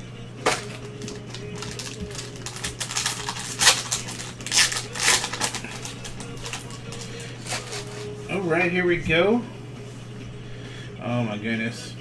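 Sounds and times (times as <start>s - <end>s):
faint steady hum: 0.0s - 12.0s
cards rustling: 0.4s - 8.4s
wrappers crinkling: 0.4s - 8.4s.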